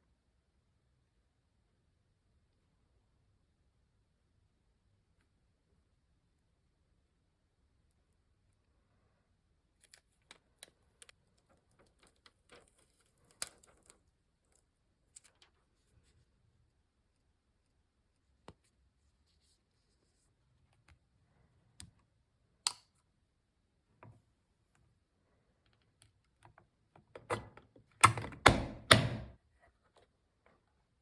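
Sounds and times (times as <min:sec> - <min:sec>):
mechanical keyboard keystrokes: 0:27.2 - 0:29.3.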